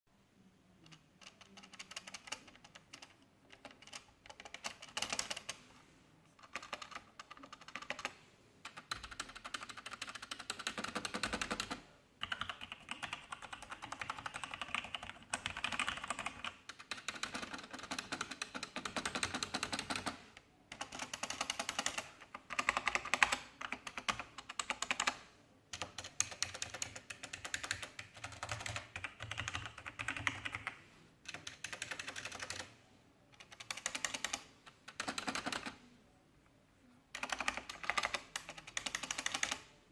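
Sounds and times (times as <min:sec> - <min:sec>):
keyboard keystrokes clicking: 0:00.8 - 0:05.6, 0:06.4 - 0:32.7, 0:33.4 - 0:35.8, 0:37.1 - 0:39.7
rattling keyboard keys: 0:25.8 - 0:30.7, 0:31.3 - 0:32.7, 0:33.4 - 0:35.7, 0:37.2 - 0:39.6.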